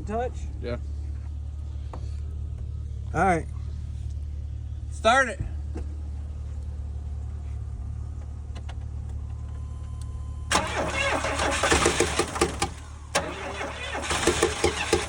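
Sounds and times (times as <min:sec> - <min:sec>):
low engine hum: 0:00.0 - 0:15.0
starter cranking engine: 0:10.5 - 0:15.0.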